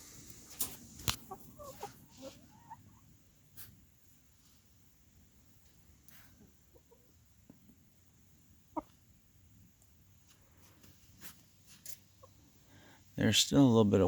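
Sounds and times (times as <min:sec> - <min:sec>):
hens clucking softly: 0:00.3 - 0:03.9, 0:05.4 - 0:09.9, 0:11.9 - 0:12.6.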